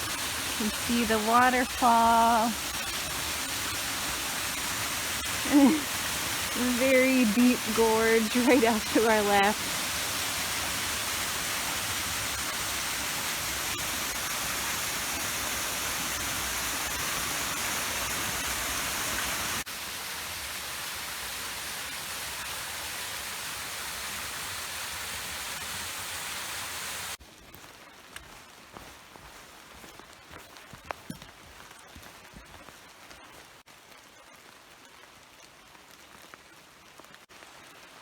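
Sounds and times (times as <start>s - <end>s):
waterfall rushing: 4.6s - 15.2s.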